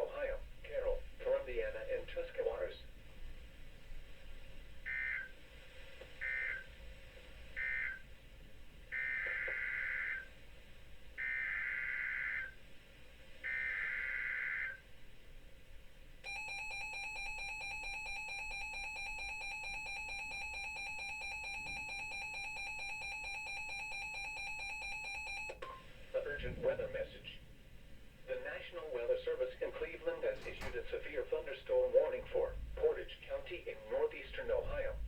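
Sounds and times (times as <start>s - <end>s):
two-tone attention signal: 16.3s - 25.8s.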